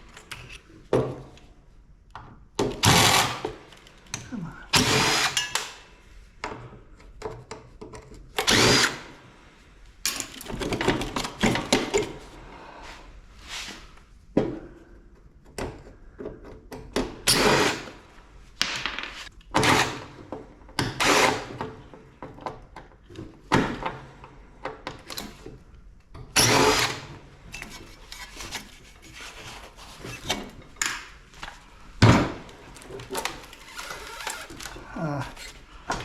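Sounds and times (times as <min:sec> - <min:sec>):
power tool bursts on metal: 0:02.8 - 0:03.4, 0:04.7 - 0:05.7, 0:08.4 - 0:09.1, 0:17.3 - 0:17.9, 0:20.9 - 0:21.5, 0:26.4 - 0:27.1.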